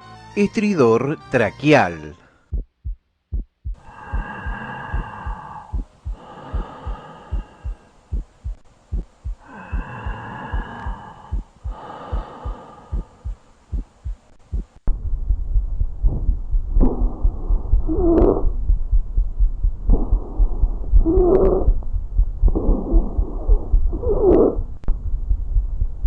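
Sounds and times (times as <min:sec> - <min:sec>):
heartbeat thumps: 0:02.4 - 0:26.0
low rumble: 0:02.5 - 0:11.8, 0:12.9 - 0:26.0
high-pitched breath sounds: 0:03.8 - 0:08.6, 0:09.2 - 0:13.9.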